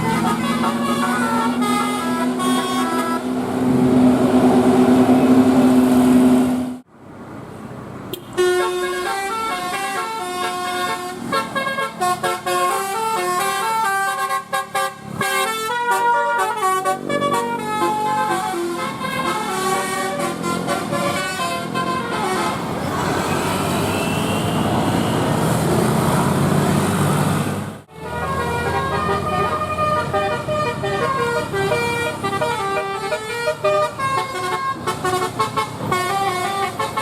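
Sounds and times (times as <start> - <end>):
bus musical horn: 0.0 - 4.0, 8.1 - 25.5, 27.9 - 37.0.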